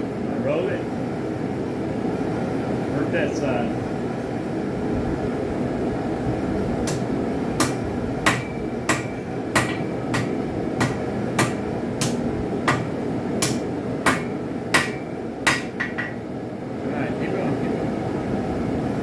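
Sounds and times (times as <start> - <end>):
hammer striking metal on anvil: 6.9 - 16.2.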